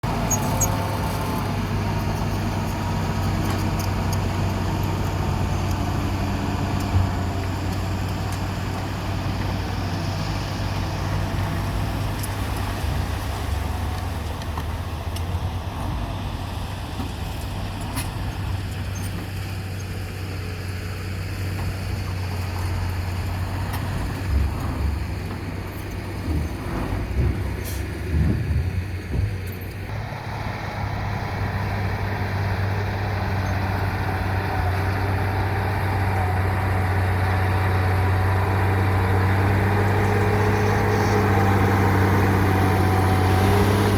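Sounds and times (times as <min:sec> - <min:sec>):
diesel truck engine running: 0:00.0 - 0:43.9
knocks and thumps: 0:26.1 - 0:29.6.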